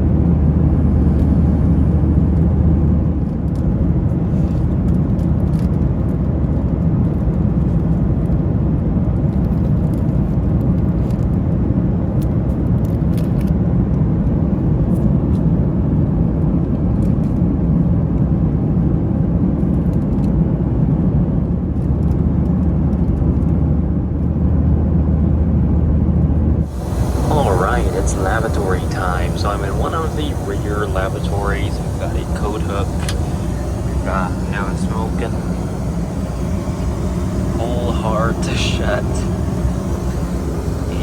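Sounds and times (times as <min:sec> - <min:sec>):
airliner cabin roar: 0:00.0 - 0:08.2, 0:25.6 - 0:41.0
constant low hum: 0:00.0 - 0:11.2, 0:24.1 - 0:41.0.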